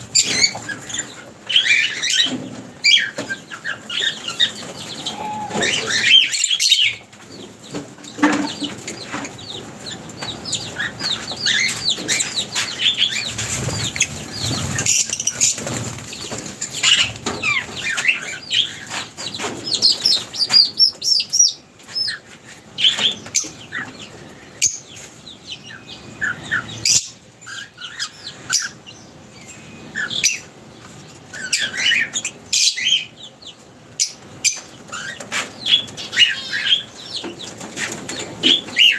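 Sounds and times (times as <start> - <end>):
birds chirping: 0.0 - 38.9
bird wings flapping: 10.2 - 18.3.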